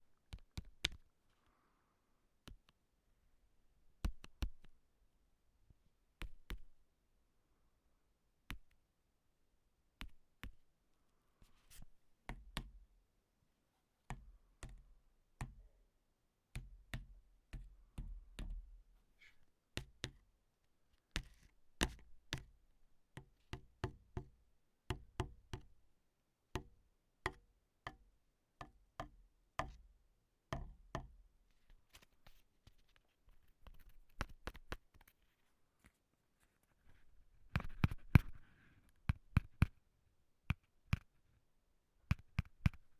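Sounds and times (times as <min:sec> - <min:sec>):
taps on a hard surface: 0:30.5 - 0:31.2.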